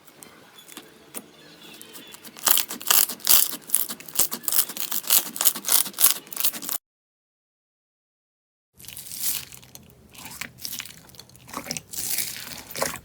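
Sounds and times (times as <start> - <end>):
slime crackling and popping: 2.2 - 6.8, 8.8 - 13.0.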